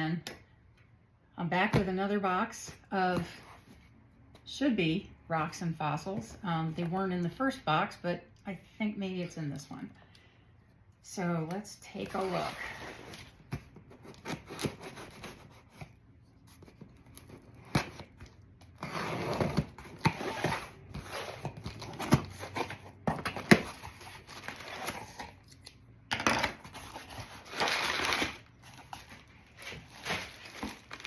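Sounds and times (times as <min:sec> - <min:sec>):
cardboard tearing: 0:26.4 - 0:31.0
packing material rustling: 0:26.7 - 0:31.0.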